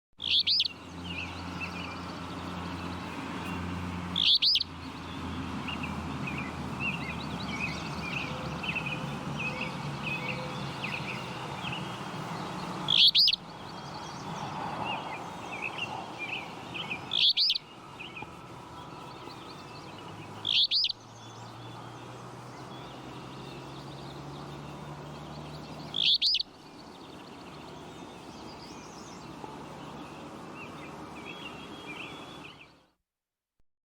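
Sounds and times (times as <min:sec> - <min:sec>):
bird giving high calls: 0:00.2 - 0:00.8, 0:04.2 - 0:04.7, 0:12.9 - 0:13.5, 0:16.3 - 0:18.2, 0:20.4 - 0:21.0, 0:25.9 - 0:26.6
small birds twittering: 0:00.2 - 0:32.9.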